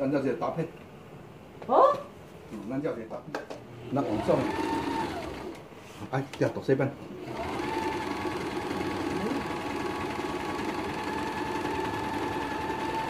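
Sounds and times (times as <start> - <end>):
sewing machine motor hum: 4.0 - 5.6, 7.2 - 13.0.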